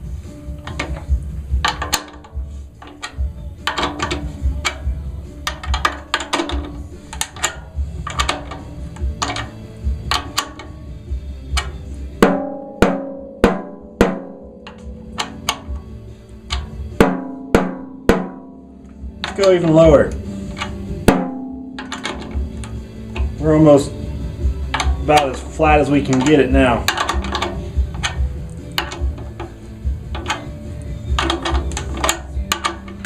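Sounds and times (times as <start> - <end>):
snare drum hits: 12.2 - 15.7, 16.5 - 18.5, 21.1 - 22.4.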